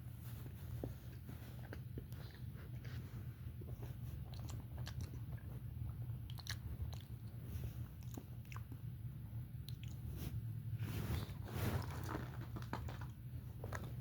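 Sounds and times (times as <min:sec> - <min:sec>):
steady low hum: 0:00.0 - 0:14.0
close-up chewing and biting: 0:03.6 - 0:08.9, 0:09.6 - 0:10.1.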